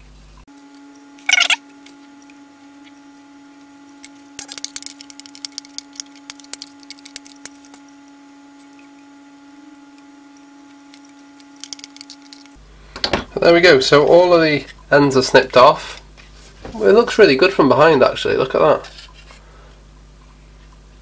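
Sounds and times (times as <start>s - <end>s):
low electrical hum: 0.0s - 21.0s
snips clipping wire leads: 0.5s - 12.6s.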